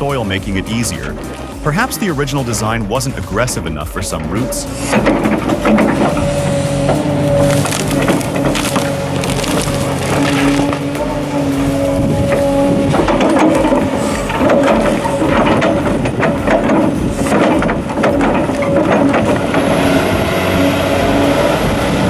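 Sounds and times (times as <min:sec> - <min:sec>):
diesel machine running: 0:00.0 - 0:22.0
wood cracking and breaking: 0:04.8 - 0:21.8.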